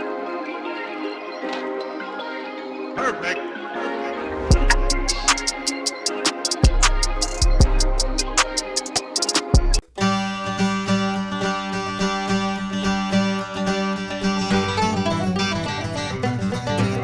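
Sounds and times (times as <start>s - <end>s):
plucked string music: 4.5s - 17.0s.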